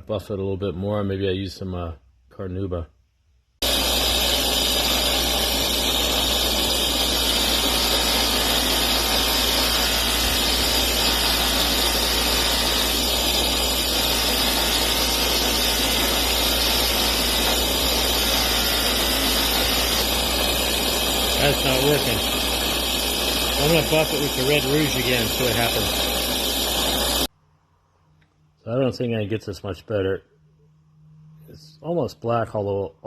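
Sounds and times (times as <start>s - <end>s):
electric buffing wheel running: 3.6s - 27.3s.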